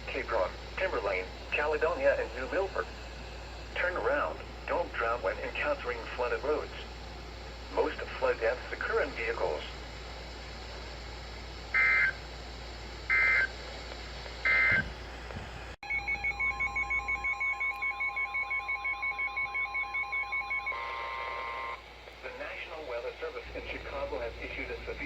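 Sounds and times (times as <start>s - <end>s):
steady warning tone: 11.7s - 12.4s, 13.0s - 13.6s, 14.4s - 14.9s, 15.8s - 25.0s
warbling alert alarm: 15.8s - 21.8s.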